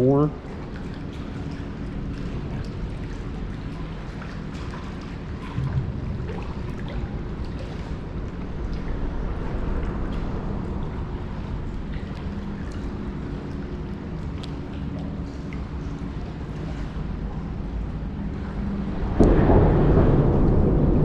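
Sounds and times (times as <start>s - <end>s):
wind buffeting microphone: 5.3s - 11.7s, 18.7s - 21.0s.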